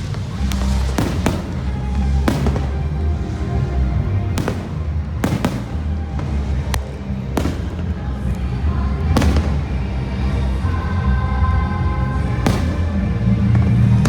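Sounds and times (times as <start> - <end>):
fireworks bangs: 0.0 - 14.0.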